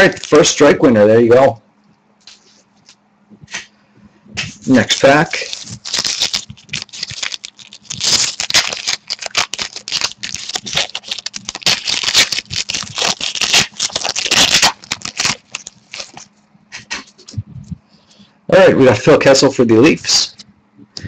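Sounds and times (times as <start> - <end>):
cards scraping and rattling: 4.4 - 17.2
wrapper crinkling and tearing: 4.6 - 16.3.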